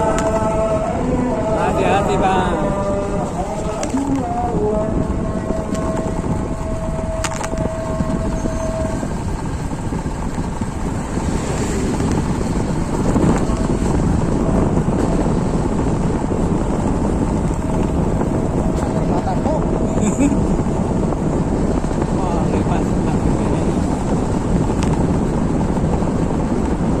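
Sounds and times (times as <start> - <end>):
steady humming tone: 0.0 - 27.0.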